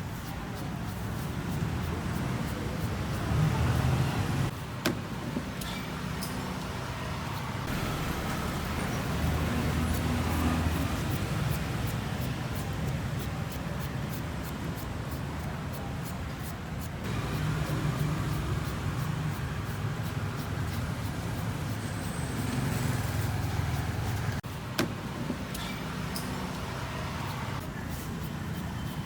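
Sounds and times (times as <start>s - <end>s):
steady street din: 0.0s - 29.0s
vehicle engines rumbling past: 2.0s - 4.5s, 5.9s - 12.2s, 17.1s - 24.4s.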